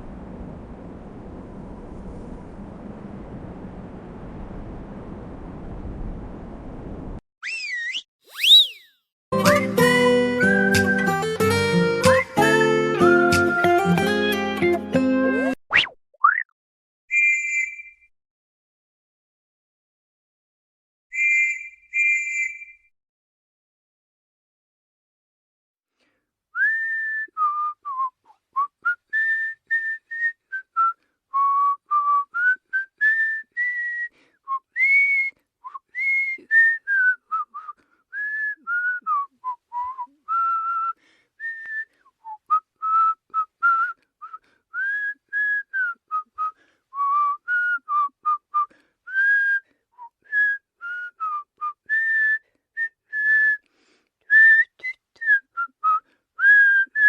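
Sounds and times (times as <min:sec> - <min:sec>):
person whistling a tune: 0:08.3 - 0:11.4, 0:12.0 - 0:13.7, 0:21.1 - 0:22.9, 0:26.6 - 0:53.7, 0:54.3 - 0:57.0.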